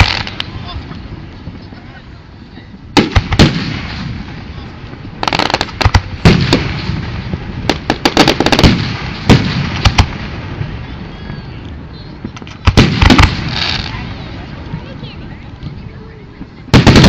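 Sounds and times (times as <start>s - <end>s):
fireworks bangs: 0.0s - 0.7s, 2.9s - 15.1s, 16.4s - 17.0s
fireworks crackling: 0.0s - 17.0s.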